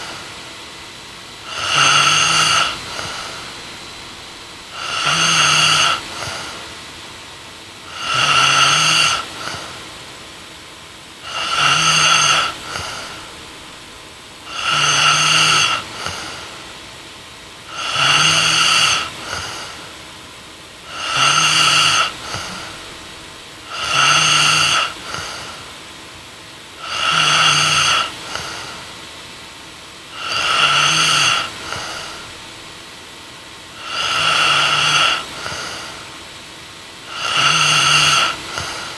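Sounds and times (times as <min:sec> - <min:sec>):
person snoring: 0:01.4 - 0:06.8, 0:07.8 - 0:09.8, 0:11.2 - 0:13.8, 0:14.4 - 0:16.8, 0:17.6 - 0:20.0, 0:20.8 - 0:25.8, 0:26.7 - 0:29.0, 0:30.1 - 0:32.8, 0:33.7 - 0:36.2, 0:37.0 - 0:38.9.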